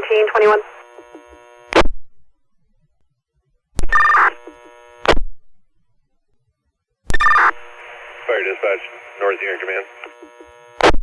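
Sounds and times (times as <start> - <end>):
radio static squelch crackle: 0.0 - 1.9, 3.8 - 5.2, 7.1 - 11.0
radio key-up click: 0.1 - 1.9, 8.8 - 11.0
two-tone radio data chirp: 3.8 - 5.2, 7.1 - 10.9.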